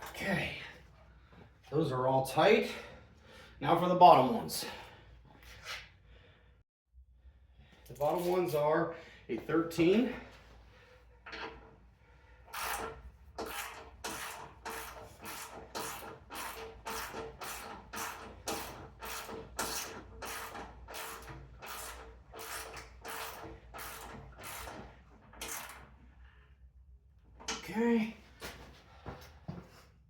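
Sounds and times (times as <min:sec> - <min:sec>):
hand ratchet strokes: 0:12.5 - 0:25.9.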